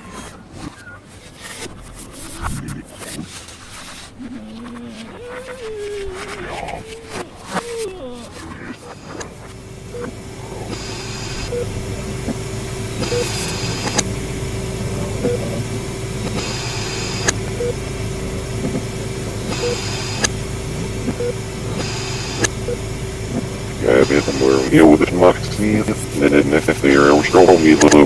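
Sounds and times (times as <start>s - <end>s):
steady hum: 0.0s - 28.0s
low rumble: 9.3s - 19.6s.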